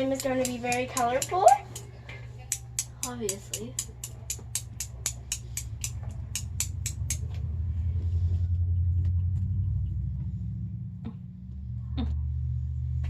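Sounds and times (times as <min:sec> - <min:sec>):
low rumble: 0:05.3 - 0:13.0.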